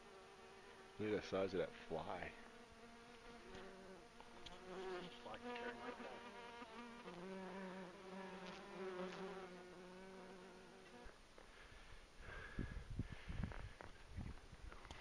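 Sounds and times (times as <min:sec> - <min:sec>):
large insect buzzing: 0:00.0 - 0:11.1.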